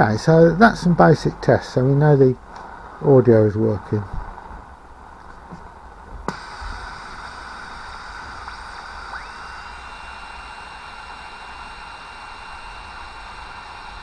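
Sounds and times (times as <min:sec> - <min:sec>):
radio hiss and static: 0:06.3 - 0:09.4.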